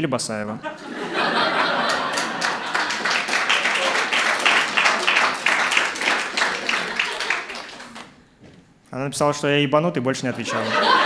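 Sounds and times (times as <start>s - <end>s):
audience laughing: 0.6s - 8.1s, 10.2s - 11.0s
audience clapping: 1.0s - 8.2s.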